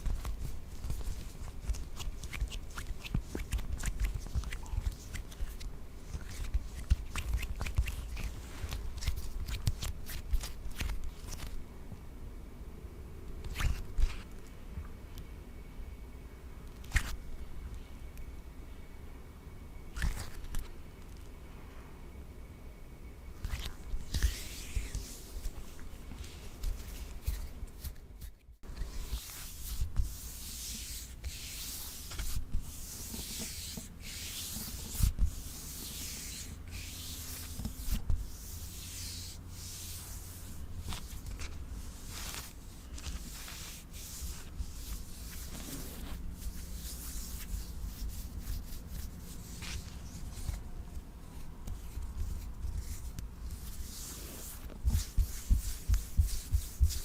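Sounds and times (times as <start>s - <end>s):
hissy rubbing scrapes: 23.4s - 50.7s, 51.7s - 57.0s.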